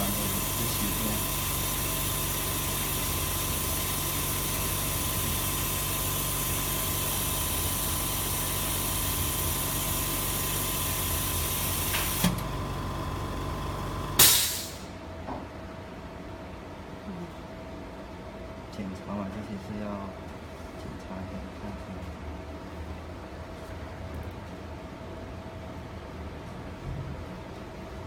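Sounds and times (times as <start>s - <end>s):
laminating machine running: 0.0s - 14.9s
loud burst of hiss: 14.2s - 15.0s.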